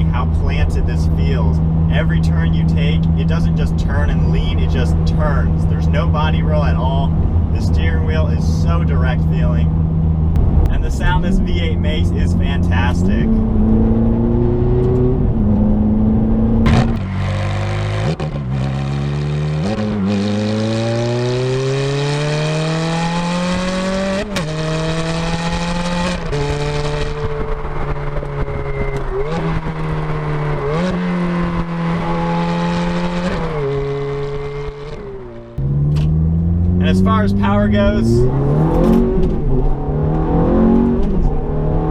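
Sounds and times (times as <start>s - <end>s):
car engine accelerating: 0.0s - 41.9s
gear change crack: 16.6s - 18.9s, 24.1s - 37.6s, 38.2s - 41.4s.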